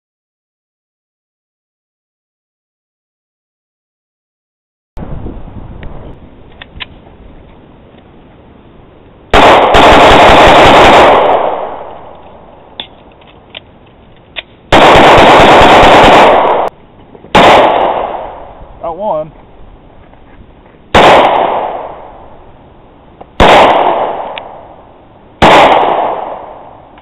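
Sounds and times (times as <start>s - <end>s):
rapid gunfire: 9.4s - 11.6s, 14.7s - 16.7s, 17.4s - 18.2s, 21.0s - 21.8s, 23.4s - 24.3s, 25.4s - 26.4s.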